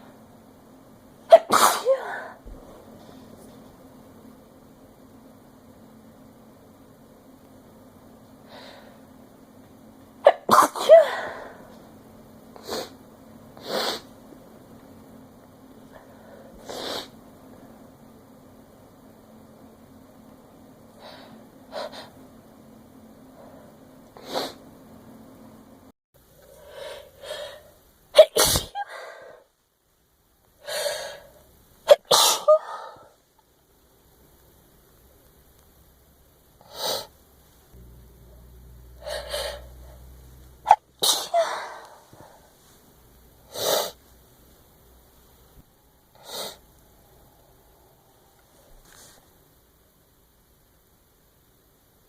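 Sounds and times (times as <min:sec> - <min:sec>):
woman sneezing: 0:01.3 - 0:02.4, 0:10.2 - 0:11.6, 0:28.2 - 0:29.0, 0:31.9 - 0:33.0, 0:40.7 - 0:42.0.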